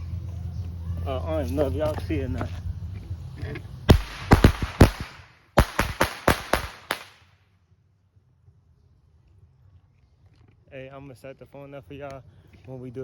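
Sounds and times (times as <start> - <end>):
firecrackers popping: 3.9 - 7.3.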